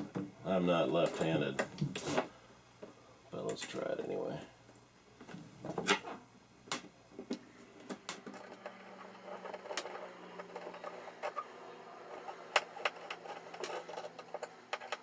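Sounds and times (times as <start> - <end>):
faint steady hum: 0.0 - 15.0
screwdriver clicking and scraping: 12.1 - 15.0.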